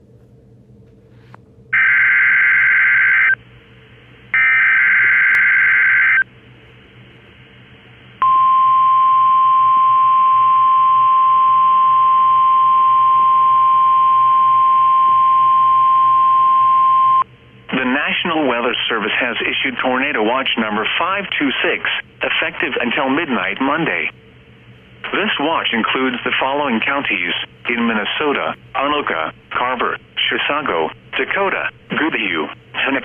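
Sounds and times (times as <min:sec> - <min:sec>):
steady single-pitch alarm tone: 0:01.7 - 0:03.4, 0:04.3 - 0:06.3, 0:08.2 - 0:17.3.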